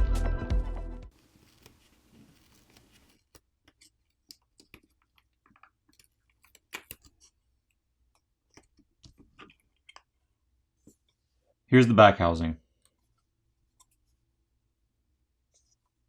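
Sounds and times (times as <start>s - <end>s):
faint clicks and taps of small parts: 1.4s - 10.2s.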